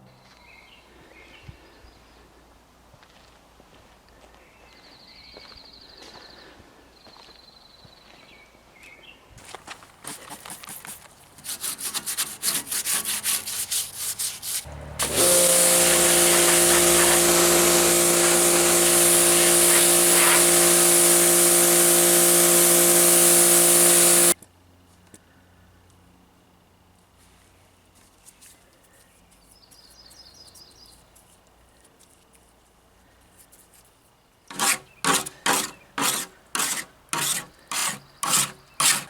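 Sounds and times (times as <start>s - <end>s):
rhythmic scraping strokes: 11.5s - 24.4s, 34.5s - 39.0s
machine motor hum with hiss: 15.0s - 24.4s.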